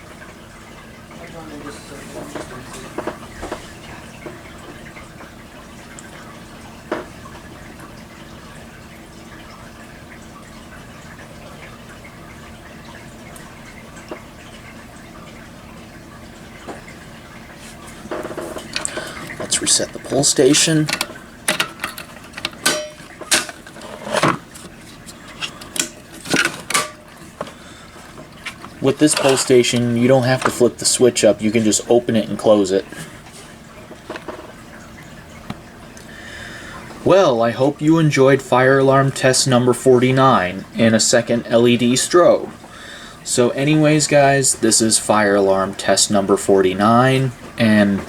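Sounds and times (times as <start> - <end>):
faint hum: 0.0 - 48.0
sharp clicks and knocks: 20.8 - 27.6.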